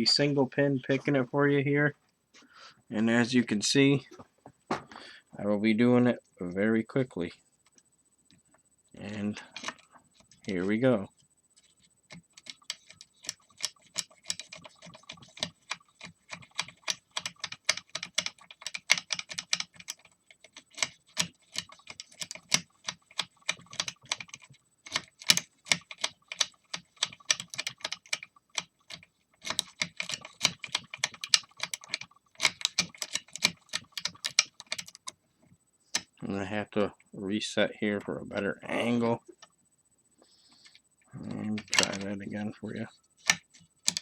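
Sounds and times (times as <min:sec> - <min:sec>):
lock picking clicks and scratches: 0:09.5 - 0:10.5, 0:11.6 - 0:35.2, 0:41.6 - 0:42.1, 0:43.2 - 0:44.0.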